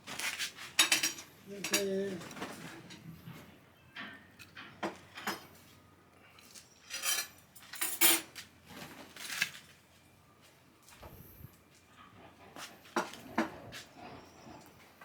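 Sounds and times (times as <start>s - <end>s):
dishes and cutlery clinking: 0.1s - 5.8s, 6.6s - 8.4s.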